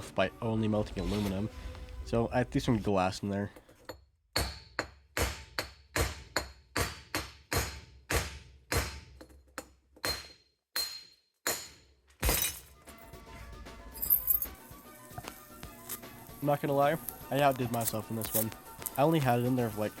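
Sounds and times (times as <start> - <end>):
glass being smashed: 11.6 - 12.8.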